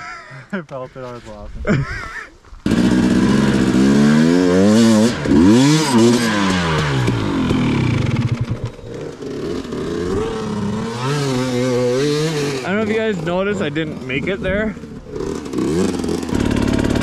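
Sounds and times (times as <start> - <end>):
dirt bike engine revving: 2.6 - 17.0.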